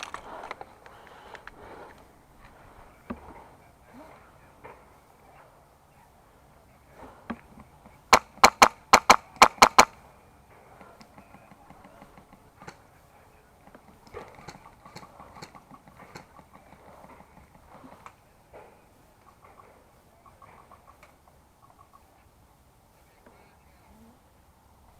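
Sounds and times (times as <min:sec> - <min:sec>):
faint clicks and rustling: 0:00.0 - 0:05.6, 0:06.9 - 0:22.3
airsoft rifle rapid shots: 0:08.1 - 0:10.0.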